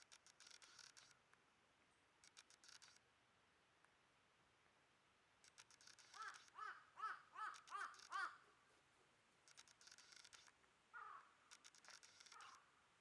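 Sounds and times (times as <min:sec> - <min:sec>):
faint clicks: 0:00.0 - 0:01.4, 0:02.2 - 0:03.0, 0:05.4 - 0:06.7, 0:07.4 - 0:08.3, 0:09.4 - 0:12.7
crow cawing: 0:06.1 - 0:08.4, 0:11.0 - 0:11.4, 0:12.3 - 0:12.6.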